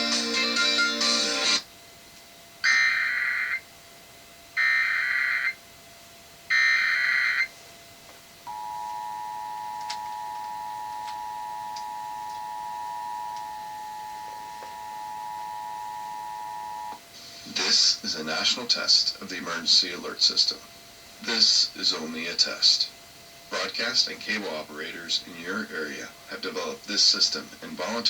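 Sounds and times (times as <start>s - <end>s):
two-tone attention signal: 8.5s - 17.0s.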